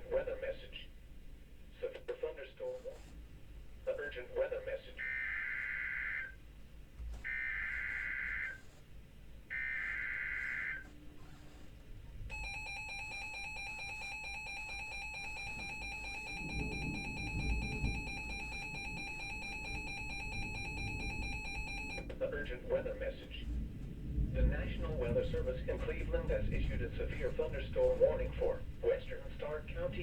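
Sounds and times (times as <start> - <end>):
screechy digital data tones: 9.6 - 10.8, 12.3 - 22.0
piercing attention tone: 12.3 - 22.1.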